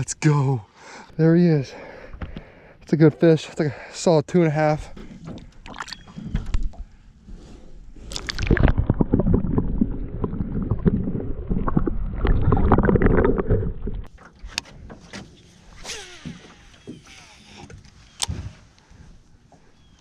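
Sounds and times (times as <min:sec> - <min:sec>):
water sloshing around a boat: 0:01.8 - 0:08.6, 0:14.0 - 0:20.0.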